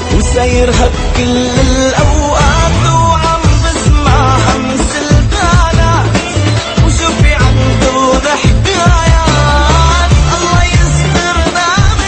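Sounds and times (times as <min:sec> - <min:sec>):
pop song with steady beat: 0:00.0 - 0:12.0.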